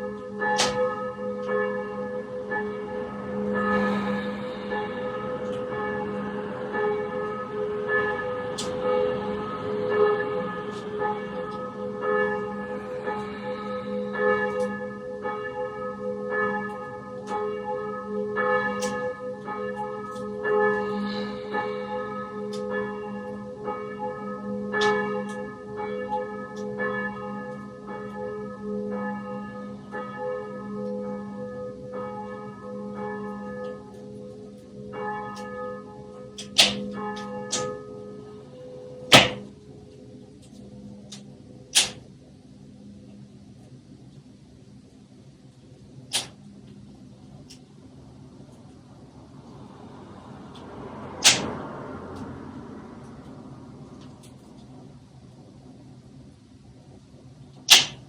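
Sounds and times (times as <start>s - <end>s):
church bells ringing: 0.0s - 43.0s
sharp clicks: 41.8s - 42.0s, 51.2s - 51.5s, 57.7s - 58.0s.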